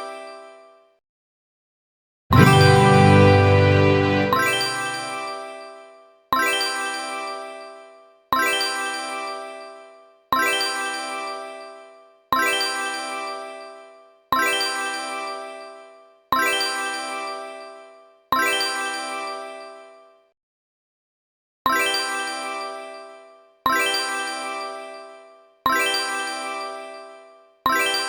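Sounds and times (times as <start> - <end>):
bell-like ding: 2.3 - 5.4.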